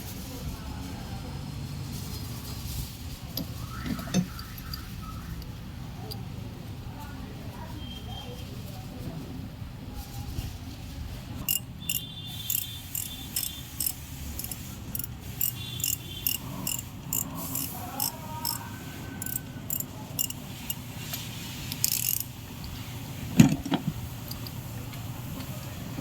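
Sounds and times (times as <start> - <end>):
ratchet wrench clicking: 3.4 - 6.2, 11.4 - 22.8, 24.2 - 25.5.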